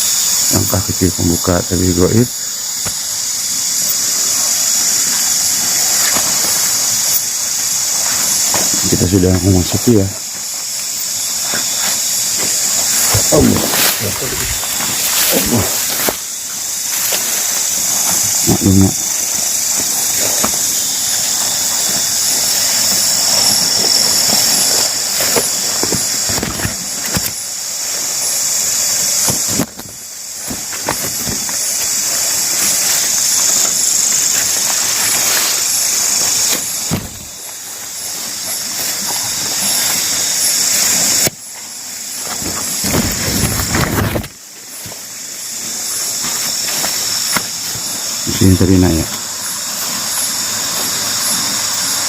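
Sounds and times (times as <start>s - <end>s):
cicada chorus drone: 0.0s - 52.0s
brush rustling: 2.3s - 52.0s
footsteps on a trail: 4.7s - 9.0s, 10.1s - 27.4s, 29.3s - 48.2s.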